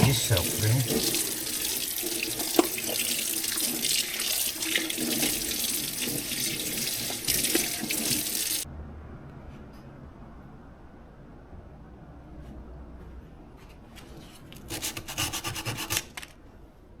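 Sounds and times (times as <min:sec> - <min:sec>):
tap water running into sink: 0:00.0 - 0:08.6.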